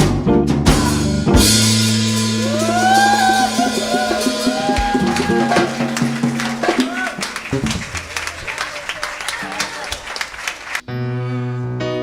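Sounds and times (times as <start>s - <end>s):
live band music: 0.1s - 10.8s
drum fill with crash cymbal: 0.7s - 6.7s.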